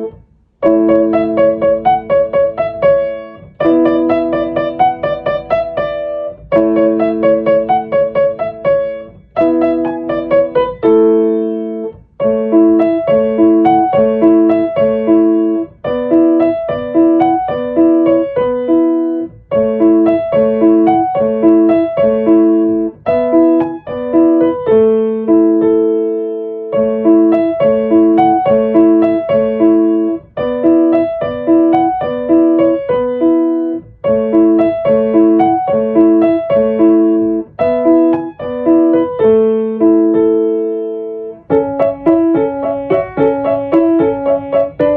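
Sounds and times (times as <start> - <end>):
solo piano music: 0.0 - 44.9.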